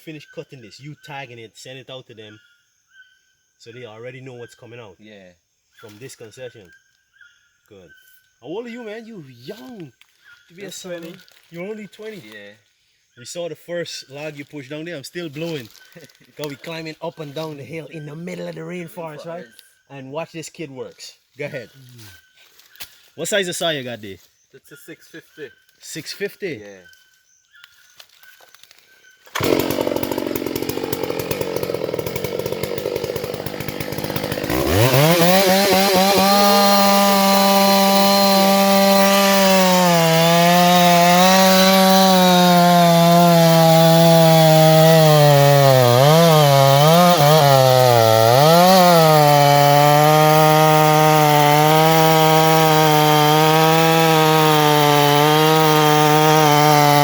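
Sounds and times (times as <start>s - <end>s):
chainsaw cutting into log: 29.3s - 57.0s
chainsaw idling and revving: 29.3s - 57.0s.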